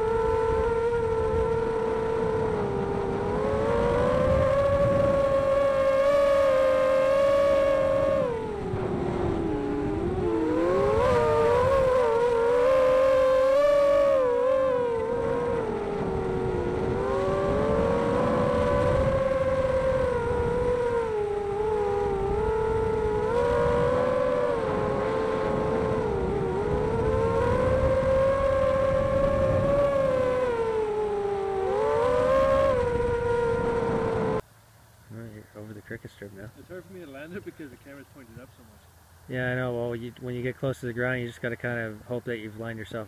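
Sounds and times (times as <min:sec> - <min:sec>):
drone motors whining: 0:00.0 - 0:34.4.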